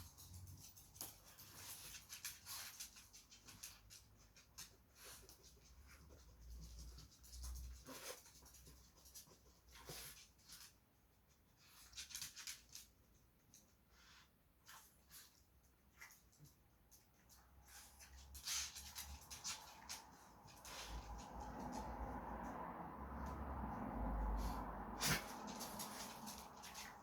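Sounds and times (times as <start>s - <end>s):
faint clicks and scrapes: 0.0s - 27.0s.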